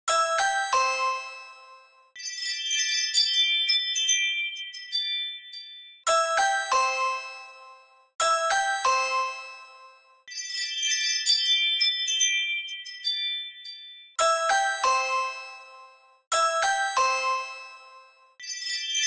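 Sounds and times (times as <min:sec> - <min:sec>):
wind chime tinkling: 0:02.2 - 0:07.3, 0:10.3 - 0:15.5, 0:18.4 - 0:19.0.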